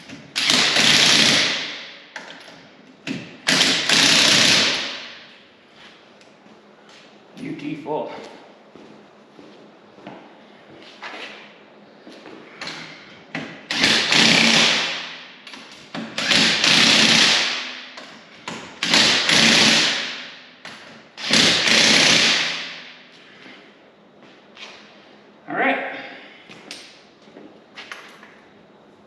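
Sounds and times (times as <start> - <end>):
impact driver hammering: 3.4 - 5.2, 13.7 - 15.2, 16.0 - 20.4, 21.2 - 22.9.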